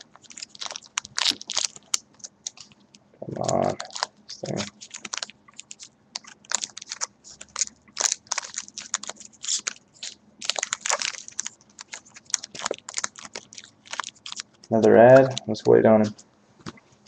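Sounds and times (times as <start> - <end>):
card pack wrapper crinkling: 0.0 - 2.8, 3.4 - 16.8.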